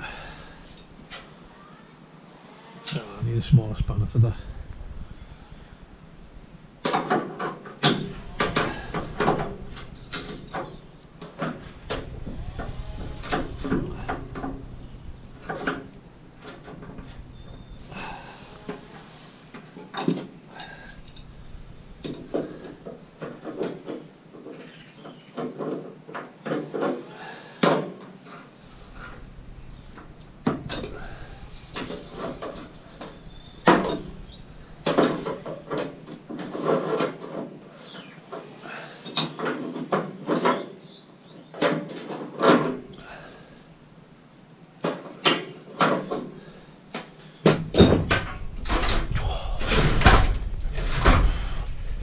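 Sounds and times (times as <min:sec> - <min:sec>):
scrap metal clanking and scraping: 0:06.4 - 0:24.1, 0:27.7 - 0:38.1, 0:47.4 - 0:52.0.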